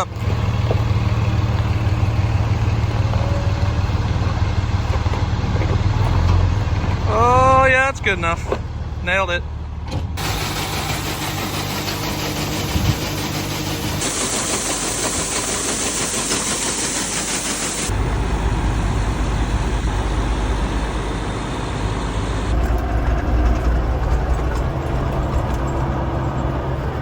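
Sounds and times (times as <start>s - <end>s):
tractor engine running: 0.0s - 27.0s
strong hiss: 10.2s - 22.5s.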